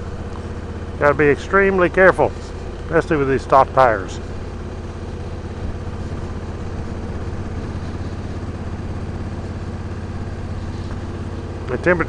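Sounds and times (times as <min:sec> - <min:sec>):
motorcycle engine running at low revs: 0:00.0 - 0:12.0.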